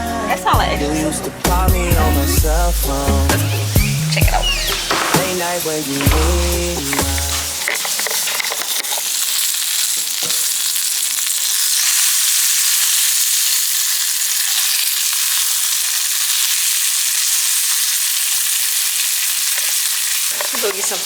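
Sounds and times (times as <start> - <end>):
sausage sizzling in a pan: 0.5 - 21.0.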